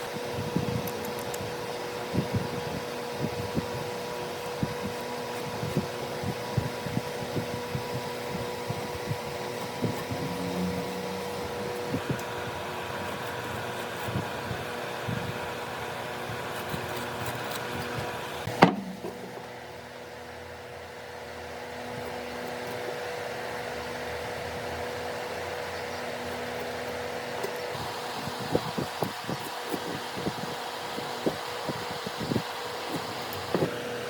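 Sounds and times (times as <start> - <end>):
fan or motor hum: 0.0 - 34.0
wood knocks and taps: 18.5 - 19.3.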